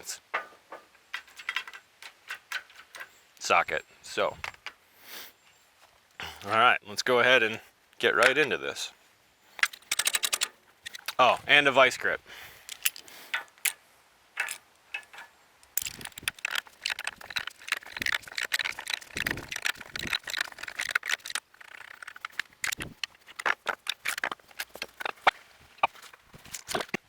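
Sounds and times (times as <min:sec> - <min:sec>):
metal hand tools clinking: 0:09.6 - 0:11.5, 0:12.6 - 0:13.8, 0:14.4 - 0:25.3.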